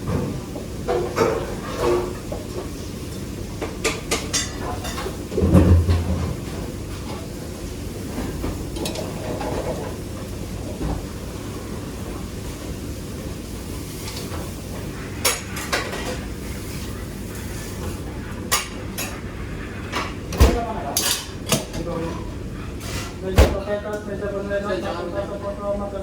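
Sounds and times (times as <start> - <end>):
pots and utensils clinking: 3.6 - 7.3, 8.3 - 10.0, 15.2 - 19.3, 19.9 - 21.8.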